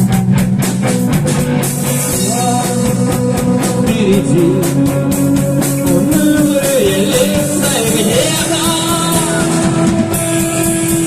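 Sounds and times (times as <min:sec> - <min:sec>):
rock song with drums and guitar: 0:00.0 - 0:11.0
person singing: 0:02.1 - 0:10.3.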